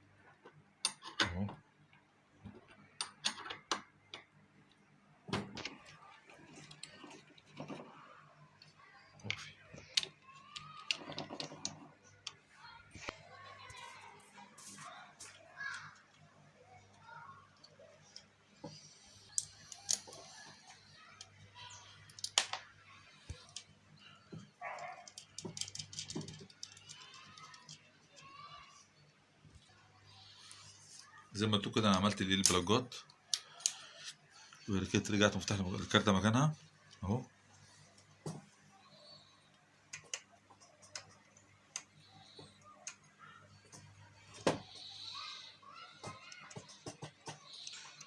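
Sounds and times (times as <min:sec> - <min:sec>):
clicks and knocks of handled parts: 0:00.4 - 0:01.6, 0:02.4 - 0:08.0, 0:08.6 - 0:13.2, 0:17.6 - 0:28.4, 0:32.0 - 0:34.2, 0:39.6 - 0:44.6, 0:46.0 - 0:48.0
hand tools clicking and tapping: 0:46.0 - 0:48.0.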